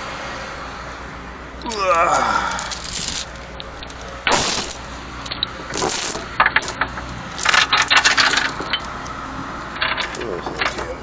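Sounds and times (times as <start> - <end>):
chain clinking and rattling: 2.4 - 9.0, 9.8 - 11.0.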